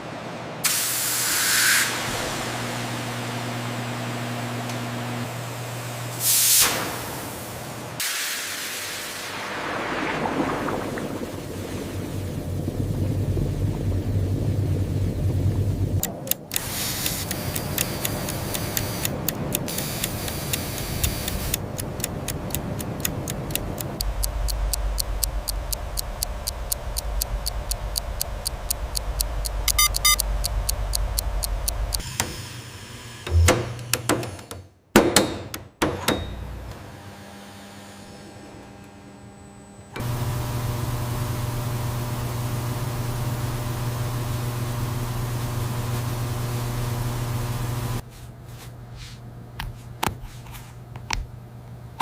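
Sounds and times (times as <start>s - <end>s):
factory machinery humming: 11.8s - 34.6s, 36.1s - 48.0s
rapid even clicks: 16.0s - 32.0s.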